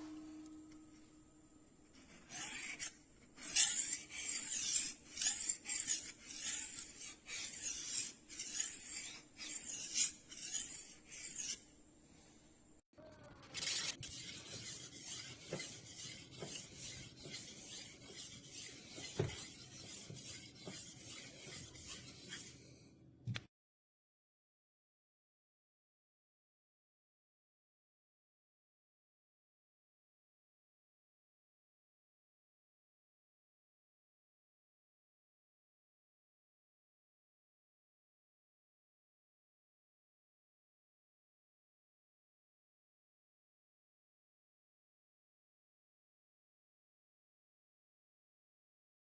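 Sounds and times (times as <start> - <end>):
knife sharpener rasping strokes: 2.0 - 11.7, 13.4 - 22.8.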